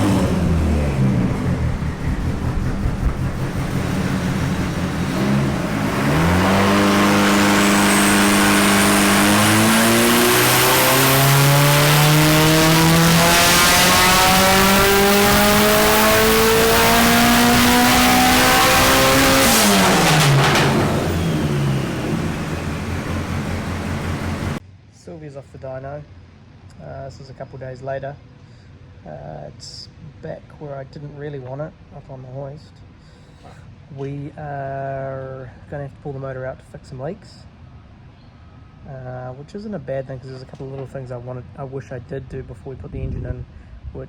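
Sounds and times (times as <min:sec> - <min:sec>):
car engine revving on a dyno: 0:00.0 - 0:24.6
exhaust cracks: 0:00.0 - 0:24.6
faint high turbo whine: 0:00.0 - 0:44.0.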